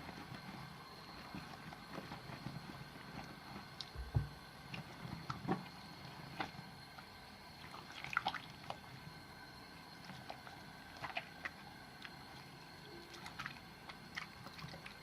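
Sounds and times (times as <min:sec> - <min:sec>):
soft low thump: 0:04.0 - 0:04.4
wet soap squishing: 0:07.6 - 0:08.9, 0:10.0 - 0:15.0.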